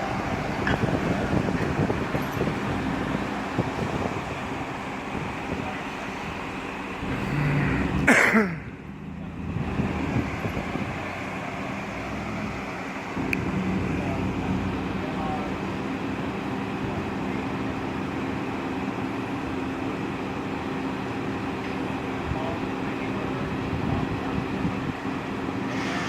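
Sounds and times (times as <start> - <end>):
road traffic noise: 0.0 - 26.0
loud whoosh falling in pitch: 7.0 - 8.8.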